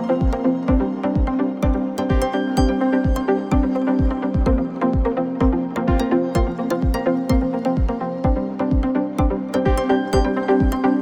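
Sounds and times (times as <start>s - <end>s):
kick drum thumps: 0.2s - 10.8s.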